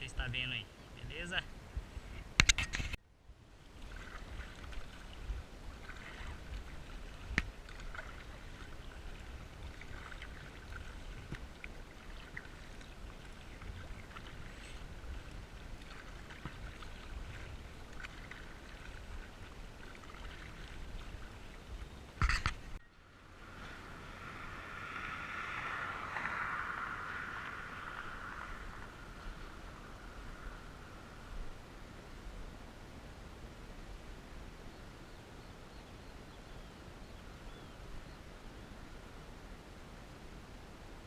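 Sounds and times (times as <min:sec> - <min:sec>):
wind rumbling on microphone: 0:00.0 - 0:41.0
sharp click: 0:02.4 - 0:03.0
water lapping against boat: 0:03.6 - 0:22.8.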